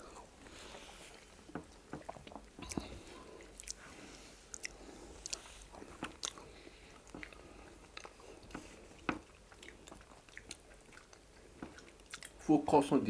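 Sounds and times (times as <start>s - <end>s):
wet chewing and swallowing: 0.0s - 12.5s
lip smacks and clicks: 4.5s - 6.4s, 7.0s - 12.4s.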